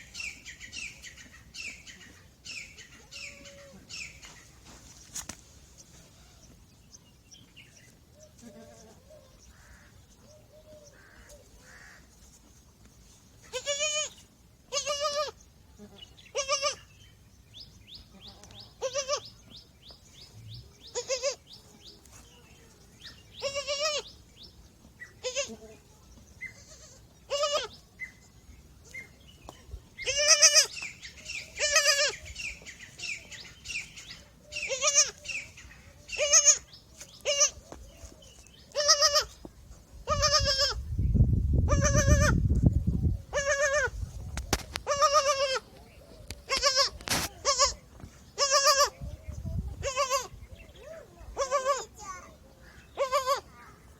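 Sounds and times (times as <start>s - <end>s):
goat kid bleating: 2.9s - 4.2s, 8.4s - 9.9s, 13.4s - 17.0s, 18.2s - 19.4s, 20.8s - 24.2s, 25.0s - 25.8s, 26.4s - 28.2s, 30.0s - 37.7s, 38.7s - 39.4s, 40.0s - 40.9s, 41.7s - 42.5s, 43.3s - 45.7s, 46.4s - 49.0s, 49.6s - 50.4s, 51.0s - 53.9s.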